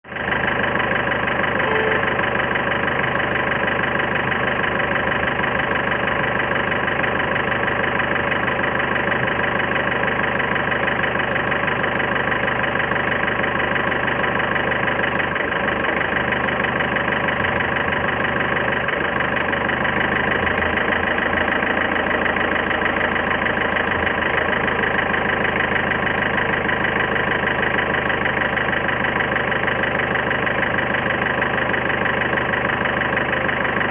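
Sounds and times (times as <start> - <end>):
diesel engine idling with knock: 0.1 - 33.9.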